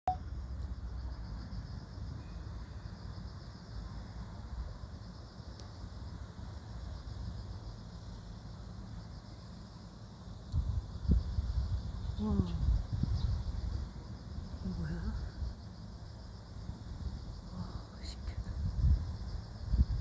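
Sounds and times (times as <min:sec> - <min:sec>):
low continuous rumble: 0:00.1 - 0:20.0
insects trilling: 0:04.9 - 0:20.0.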